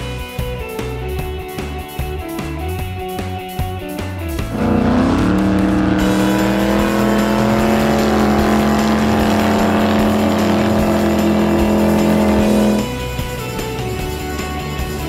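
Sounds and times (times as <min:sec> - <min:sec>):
jet boat engine at high revs: 0:04.5 - 0:13.2.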